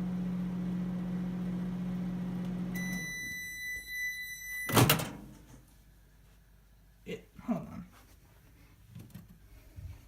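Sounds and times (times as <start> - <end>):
microwave oven humming: 0.0 - 5.3
long high electronic beep: 2.8 - 4.8.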